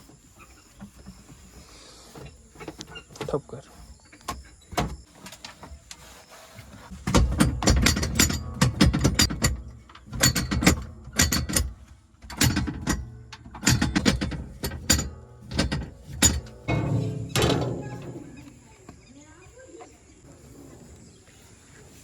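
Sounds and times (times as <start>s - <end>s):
backhoe clanking: 7.1s - 18.8s
low engine rumble: 15.5s - 18.6s.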